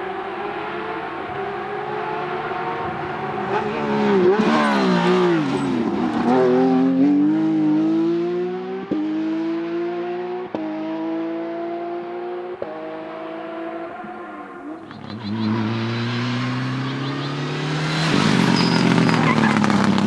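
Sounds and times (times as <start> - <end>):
rally car engine accelerating: 0.0 - 20.0
gear upshifts: 2.2 - 6.6, 13.9 - 20.0.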